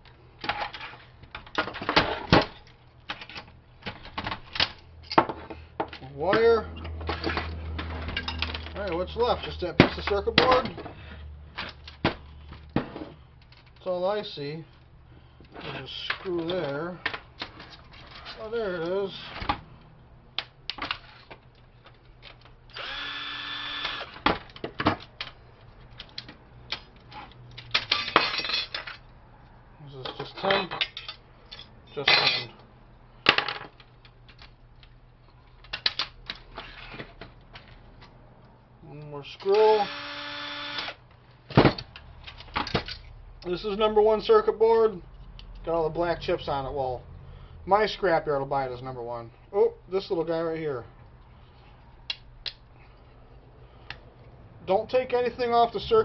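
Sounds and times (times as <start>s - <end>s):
cordless drill whining: 22.7s - 24.1s, 39.7s - 41.0s
parts clicking and knocking: 30.0s - 38.2s.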